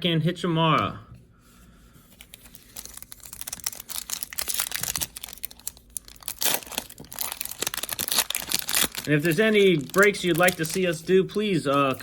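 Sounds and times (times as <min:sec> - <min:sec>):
foil wrapper crinkling and tearing: 0:02.2 - 0:12.0.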